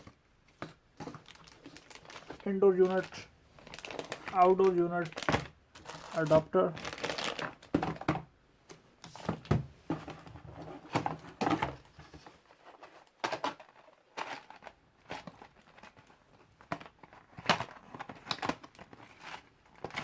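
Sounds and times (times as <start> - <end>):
plastic packaging crinkling: 1.0 - 7.7.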